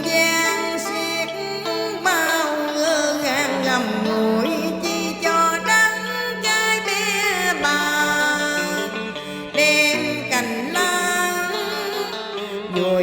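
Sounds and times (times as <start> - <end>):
instrumental music with gliding melody: 0.0 - 13.0.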